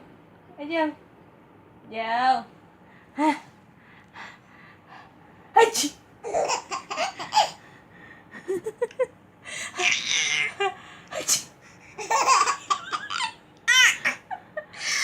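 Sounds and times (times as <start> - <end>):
baby giggling: 6.2 - 7.6, 9.8 - 10.8, 12.0 - 15.0
woman pretend sneezing: 11.1 - 11.6.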